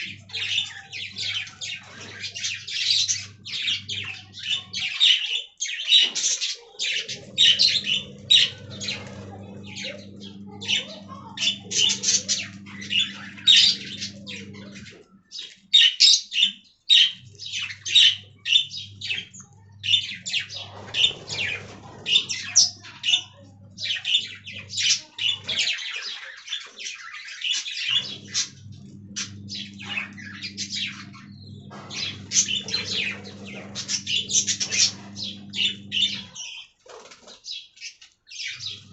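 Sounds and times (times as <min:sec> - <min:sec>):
budgerigars chirping and squawking: 0:00.0 - 0:38.9
low steady hum: 0:07.1 - 0:15.3, 0:27.9 - 0:36.4.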